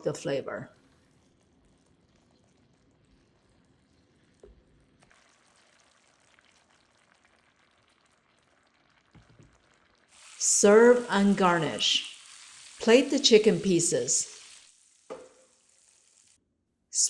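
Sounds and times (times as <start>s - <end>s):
faint sizzling in a skillet: 1.4s - 16.4s
soft knock: 15.1s - 15.3s.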